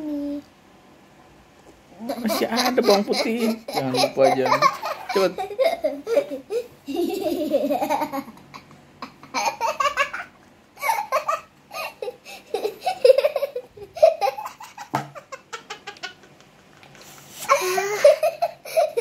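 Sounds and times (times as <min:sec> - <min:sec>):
people laughing: 0:02.2 - 0:08.1.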